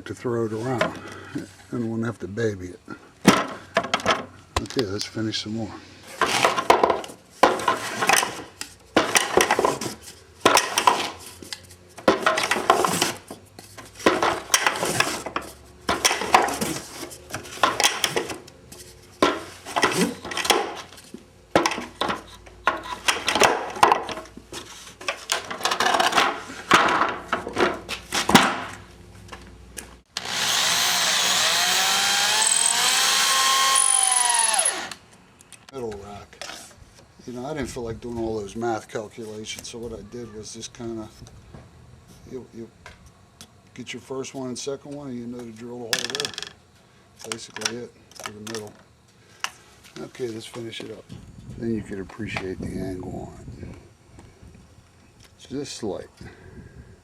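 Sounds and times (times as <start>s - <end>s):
power drill running: 30.1s - 35.0s
screws scraping and creaking: 30.1s - 35.1s.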